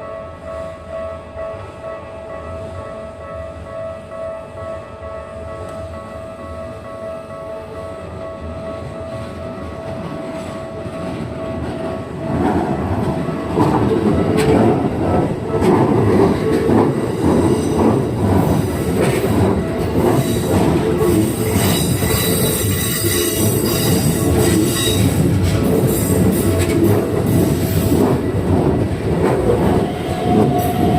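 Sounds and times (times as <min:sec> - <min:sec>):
train rumble: 0:05.1 - 0:30.9
wheels clacking over rail joints: 0:10.3 - 0:30.9
high wheel squeal: 0:20.2 - 0:25.2, 0:29.7 - 0:30.9.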